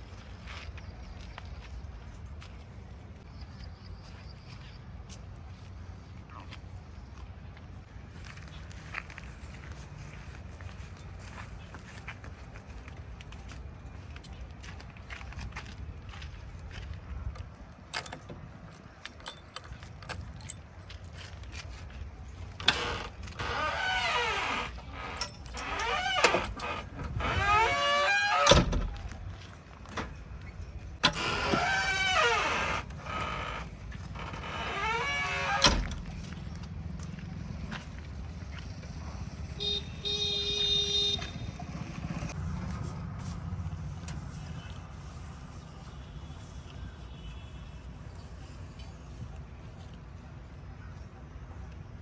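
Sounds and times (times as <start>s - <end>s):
engine running low: 35.7s - 46.1s
vehicle horn: 39.5s - 41.7s, 45.8s - 48.1s.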